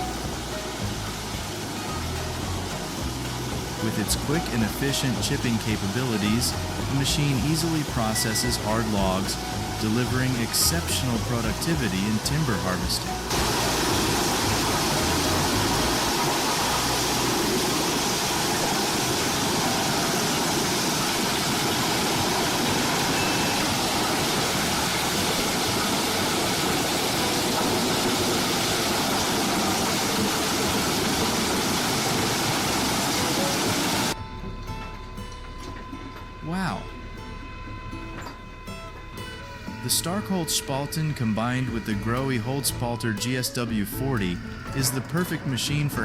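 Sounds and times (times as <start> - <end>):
wood chipper chipping logs: 0.0 - 34.2.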